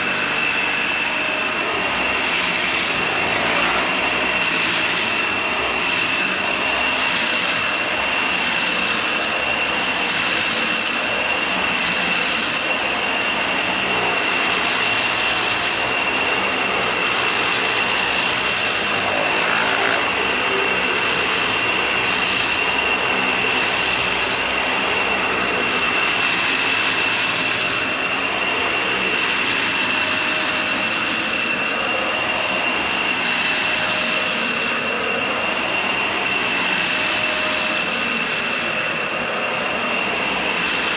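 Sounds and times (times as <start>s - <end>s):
vacuum cleaner on a rug: 0.0s - 40.9s.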